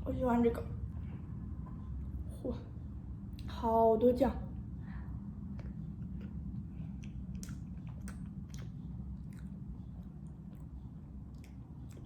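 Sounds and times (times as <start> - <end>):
steady low hum: 0.0 - 12.0
wet chewing smacks and clicks: 5.4 - 12.0.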